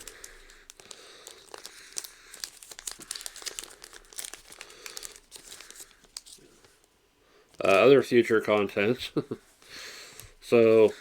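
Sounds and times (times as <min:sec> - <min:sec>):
foil wrappers crinkling: 0:00.0 - 0:06.9.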